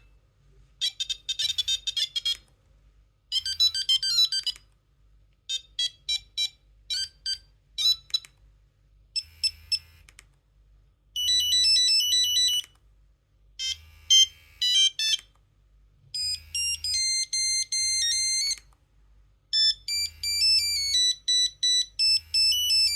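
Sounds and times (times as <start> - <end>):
monophonic ringtone melodies: 11.2 - 12.6, 19.6 - 22.9.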